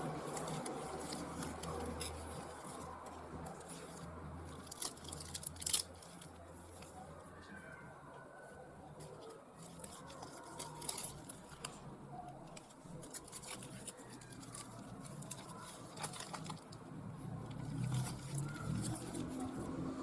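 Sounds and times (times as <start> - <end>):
scratchy rustles: 0.0 - 7.6, 8.5 - 20.0.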